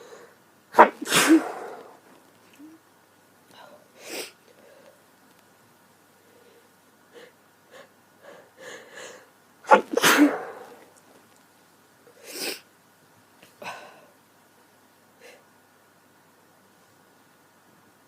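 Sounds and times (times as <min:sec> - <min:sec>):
woman breathing: 0:00.0 - 0:00.4, 0:06.2 - 0:09.4
woman sneezing: 0:00.8 - 0:01.9, 0:09.7 - 0:10.8.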